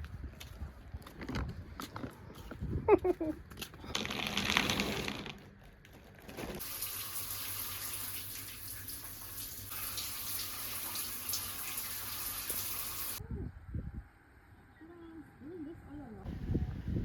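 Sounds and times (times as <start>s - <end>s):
water running from a tap: 6.6s - 13.2s.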